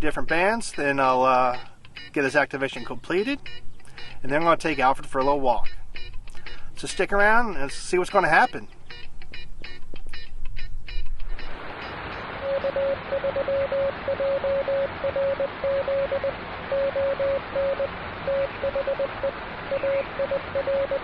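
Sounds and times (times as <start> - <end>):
morse code beeps: 1.5 - 2.1, 3.4 - 6.2, 12.4 - 21.0
radio band noise hiss: 11.4 - 21.0.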